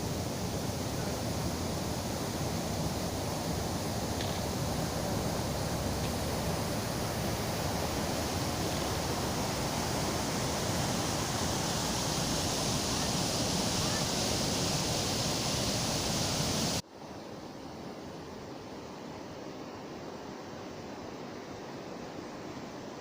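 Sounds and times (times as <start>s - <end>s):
waterfall rushing: 0.0s - 16.8s.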